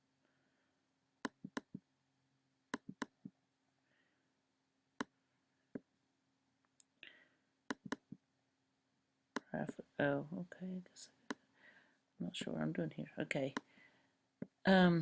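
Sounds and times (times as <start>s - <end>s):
computer mouse clicks: 1.2s - 1.8s, 2.7s - 3.2s, 7.7s - 8.2s.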